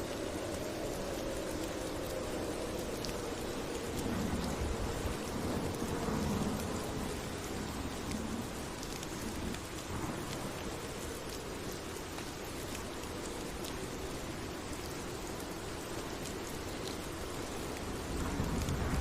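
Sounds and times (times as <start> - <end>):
steady rain falling: 0.0 - 19.0
distant thunder rumble: 18.1 - 19.0.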